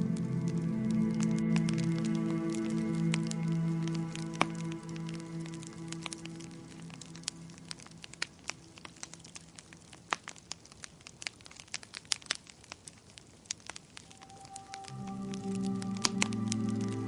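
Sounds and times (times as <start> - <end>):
soft music: 0.0 - 8.6, 14.0 - 17.0
wood fire crackling: 0.0 - 17.0.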